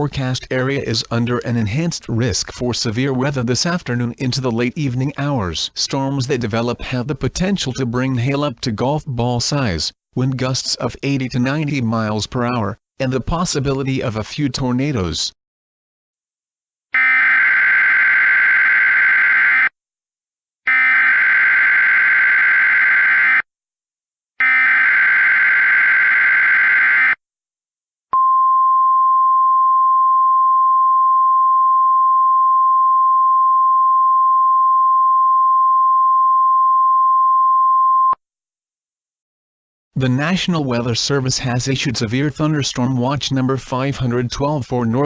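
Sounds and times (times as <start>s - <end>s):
steady warning alarm tone: 17.0s - 19.7s, 20.7s - 23.4s, 24.4s - 27.2s.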